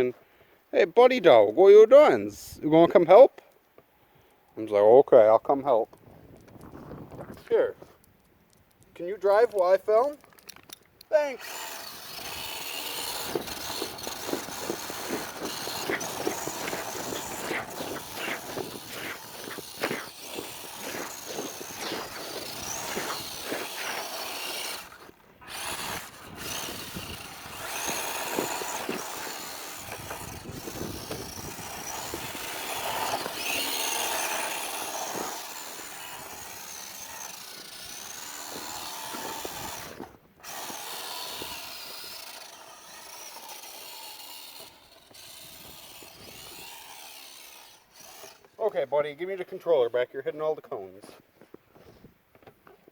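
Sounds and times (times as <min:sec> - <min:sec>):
tyres scrubbing: 0:11.2 - 0:48.5
small electric motor whining: 0:11.2 - 0:48.6.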